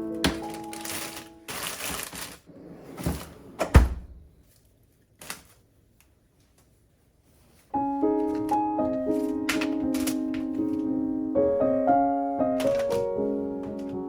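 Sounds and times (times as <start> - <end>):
rustling: 0.3 - 3.5, 4.3 - 10.9.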